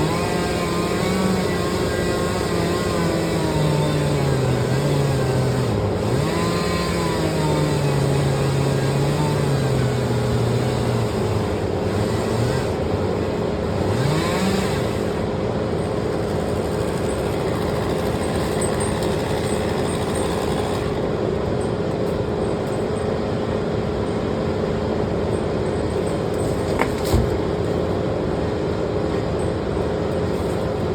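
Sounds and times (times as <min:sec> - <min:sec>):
engine running: 0:00.0 - 0:22.5.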